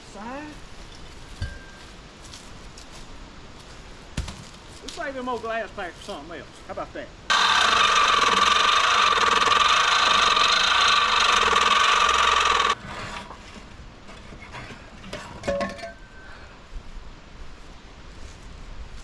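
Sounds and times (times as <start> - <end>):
power tool cutting metal pipe: 7.3 - 12.8.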